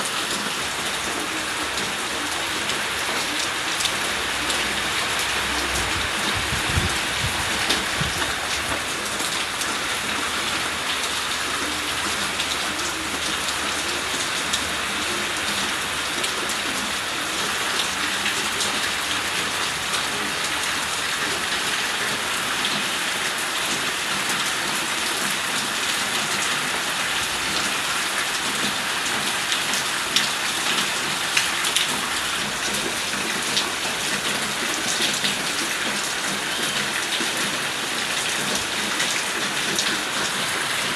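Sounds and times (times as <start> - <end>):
rain pattering: 0.0 - 40.9.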